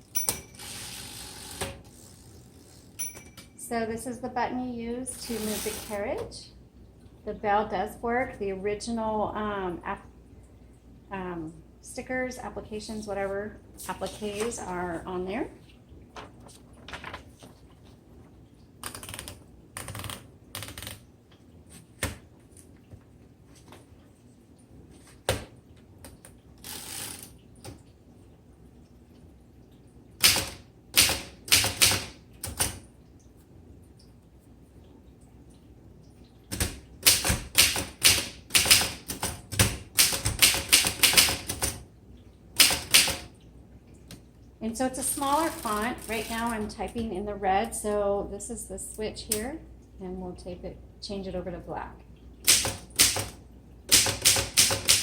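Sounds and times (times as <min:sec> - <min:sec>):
manual typewriter keystrokes: 0:18.8 - 0:21.0, 0:30.2 - 0:32.8, 0:36.5 - 0:41.8, 0:42.6 - 0:43.3, 0:52.4 - 0:55.0
loud typewriter strike: 0:30.2 - 0:32.1, 0:36.6 - 0:41.6, 0:42.6 - 0:43.2, 0:52.5 - 0:53.3, 0:53.9 - 0:55.0.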